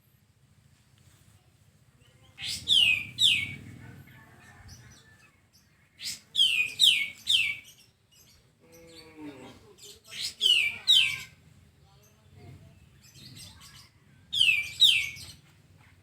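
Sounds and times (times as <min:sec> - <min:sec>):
songbird calling: 0:02.2 - 0:03.7, 0:05.6 - 0:09.2, 0:09.8 - 0:11.4, 0:13.0 - 0:15.4.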